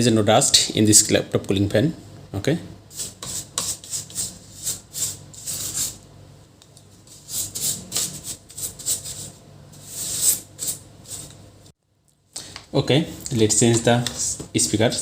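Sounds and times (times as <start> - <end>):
brush scratching inside laptop: 2.9 - 6.0, 7.0 - 11.3.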